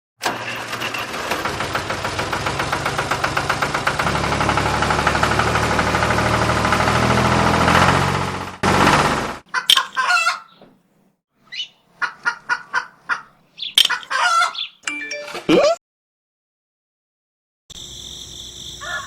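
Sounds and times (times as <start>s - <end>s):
small motor knocking: 0.9s - 9.4s
low motor hum: 1.4s - 9.4s.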